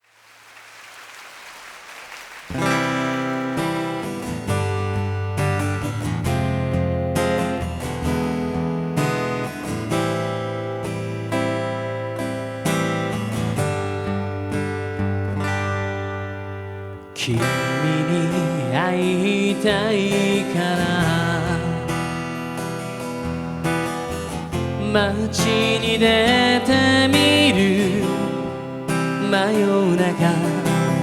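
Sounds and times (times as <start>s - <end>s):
acoustic guitar chords ringing: 2.5s - 31.0s.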